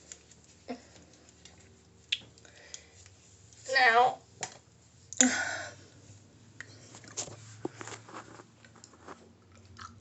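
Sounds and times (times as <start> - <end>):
faint clicks and rustles: 0.0 - 3.7, 6.0 - 9.8.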